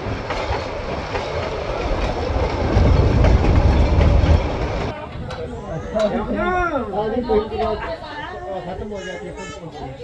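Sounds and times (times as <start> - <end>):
train rumbling on track: 0.0 - 6.4.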